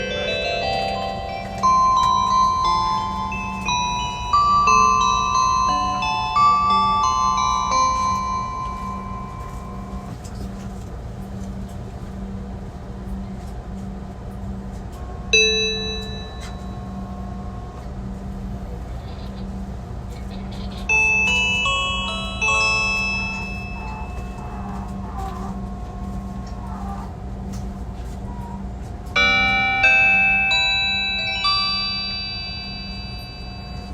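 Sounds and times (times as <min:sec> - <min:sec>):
bell-like melody: 0:00.0 - 0:10.2, 0:15.3 - 0:17.9, 0:20.8 - 0:26.6, 0:29.2 - 0:33.9
train announcement chimes: 0:00.0 - 0:10.8, 0:14.8 - 0:27.4, 0:28.3 - 0:33.9
steady low hum: 0:00.0 - 0:33.9
single bright ding: 0:15.4 - 0:16.8.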